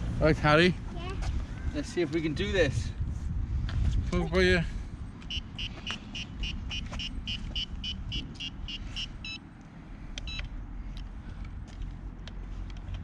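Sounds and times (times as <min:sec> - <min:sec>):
longer beeps: 0:05.3 - 0:09.4, 0:10.2 - 0:10.5
short high beeps: 0:05.3 - 0:09.4.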